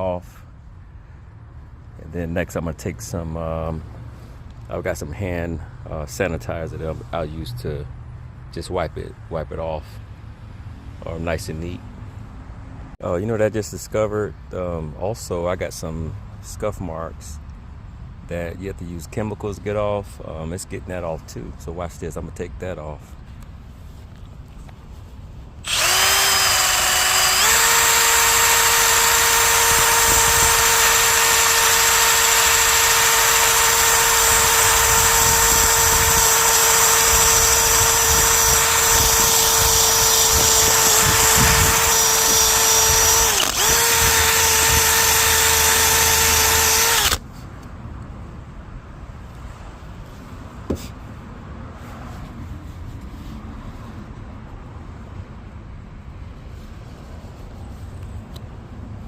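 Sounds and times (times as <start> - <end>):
power drill whining: 25.6 - 47.2.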